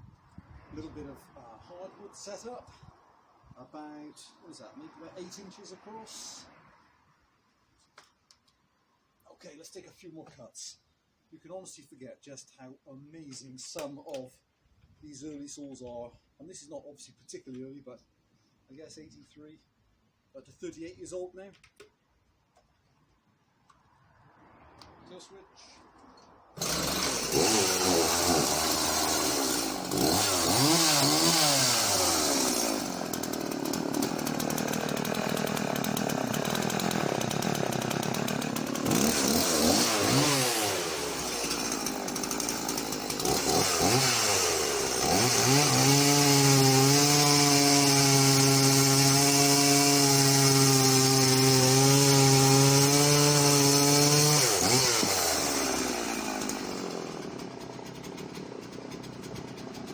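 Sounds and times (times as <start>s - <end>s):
chainsaw engine revving: 26.6s - 59.9s.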